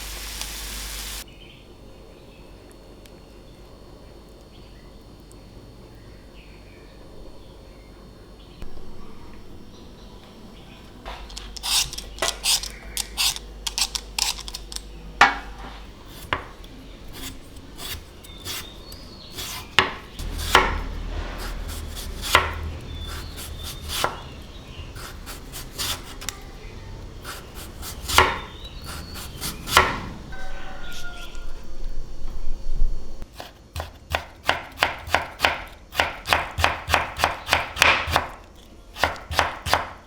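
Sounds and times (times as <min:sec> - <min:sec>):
knife scraping cutting board: 0:11.3 - 0:14.6, 0:17.1 - 0:24.3, 0:25.0 - 0:26.3, 0:27.2 - 0:29.9
knife chopping on cutting board: 0:19.3 - 0:24.3, 0:27.2 - 0:30.1, 0:33.3 - 0:38.3, 0:39.0 - 0:40.0.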